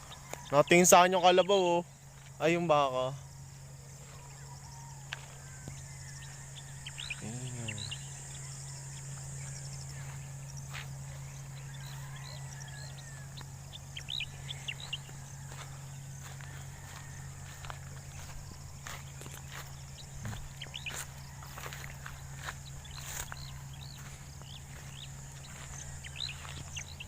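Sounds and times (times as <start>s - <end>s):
small birds chirping: 0.0s - 27.0s
steady low hum: 0.0s - 27.0s
low bird call rising and falling: 4.1s - 27.0s.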